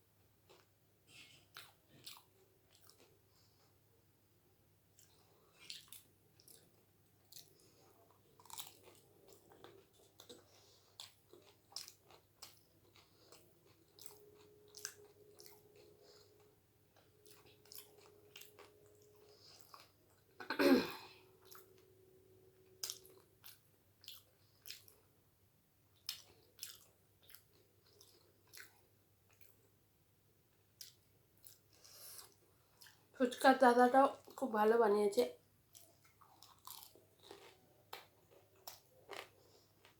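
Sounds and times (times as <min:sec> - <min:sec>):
crunchy chewing: 0:00.5 - 0:03.7, 0:04.9 - 0:20.4, 0:22.7 - 0:25.0, 0:26.0 - 0:29.6, 0:35.7 - 0:39.9.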